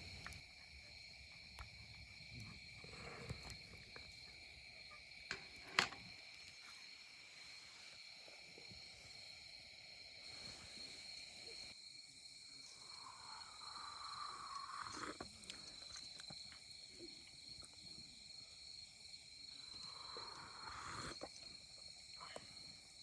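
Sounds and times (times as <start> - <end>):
insects singing: 8.0 - 23.0.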